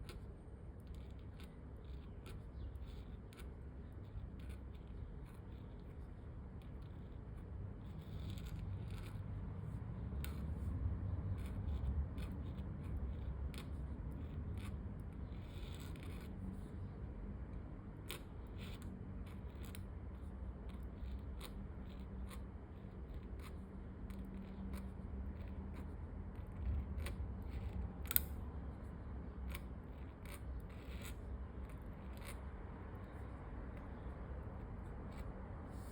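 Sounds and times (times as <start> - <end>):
pen nib scratching paper: 0.0 - 16.9, 17.5 - 28.2, 29.4 - 35.9
low room hum: 0.0 - 35.9.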